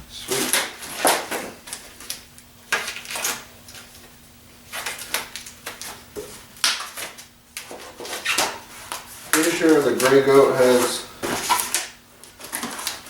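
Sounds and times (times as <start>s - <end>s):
packaging rustling and crinkling: 4.7s - 13.0s.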